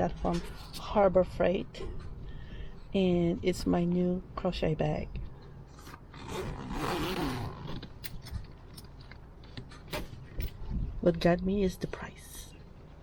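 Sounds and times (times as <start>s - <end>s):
zipper pulled open: 5.8s - 8.3s.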